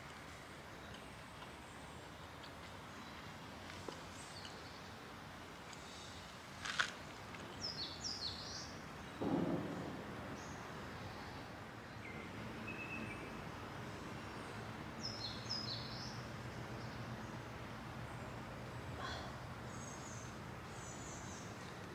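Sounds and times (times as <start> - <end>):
forest ambience: 0.0 - 21.9
bird chirping: 10.3 - 13.4.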